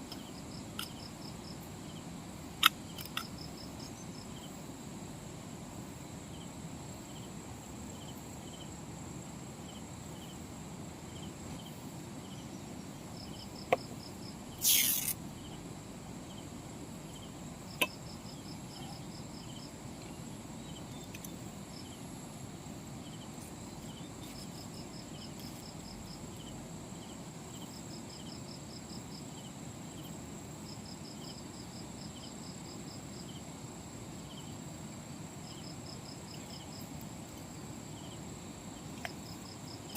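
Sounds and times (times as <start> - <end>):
insects chirping: 0.0 - 39.9
short loud hiss: 14.6 - 15.2.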